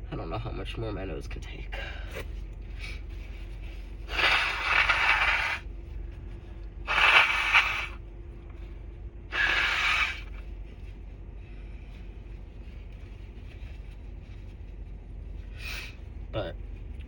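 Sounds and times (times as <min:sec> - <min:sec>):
air bursting through nose: 0:04.0 - 0:05.6, 0:06.8 - 0:08.0, 0:09.3 - 0:10.4.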